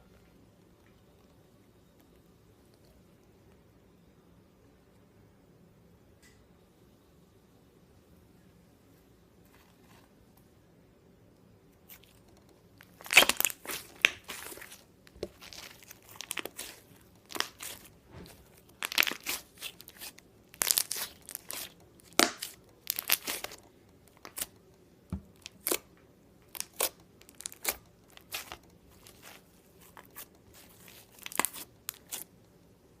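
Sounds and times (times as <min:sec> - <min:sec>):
slime squeezed crackling pops: 0:12.9 - 0:23.6.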